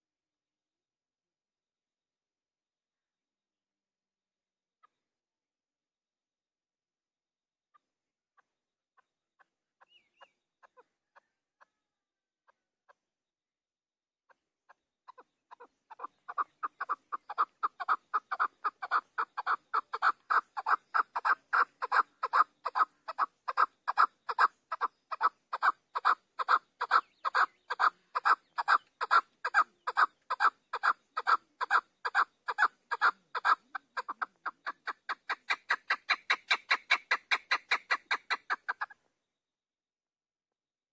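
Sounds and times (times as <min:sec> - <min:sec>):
partridge clucking calls: 0:09.0 - 0:11.8, 0:14.3 - 0:39.0.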